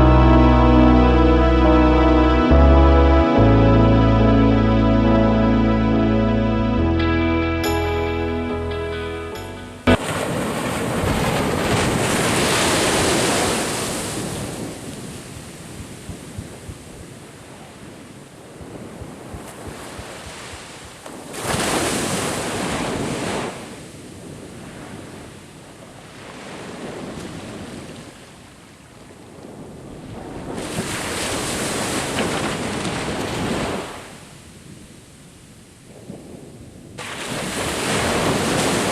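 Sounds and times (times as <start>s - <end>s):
surf washing onto beach: 9.9s - 34.8s, 37.0s - 38.9s
wind buffeting microphone: 10.0s - 38.9s.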